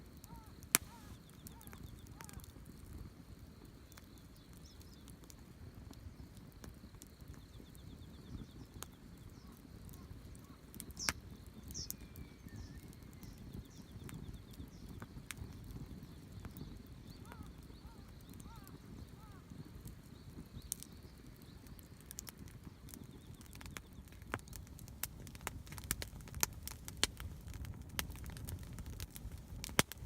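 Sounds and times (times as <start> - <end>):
campfire crackling and popping: 0.0 - 30.0
faint bird chirps: 0.2 - 2.5, 6.0 - 24.7.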